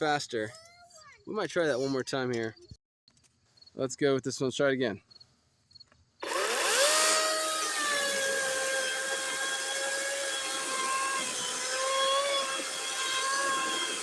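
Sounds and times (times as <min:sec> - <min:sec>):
electric chainsaw cutting log: 0:06.2 - 0:14.0.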